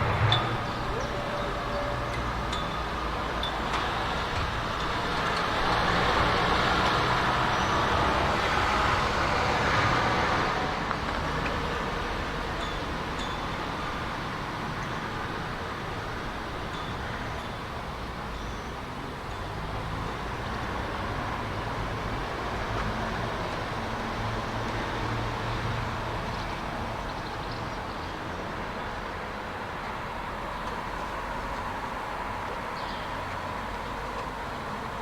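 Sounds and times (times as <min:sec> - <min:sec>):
train rumbling: 0:00.0 - 0:16.8.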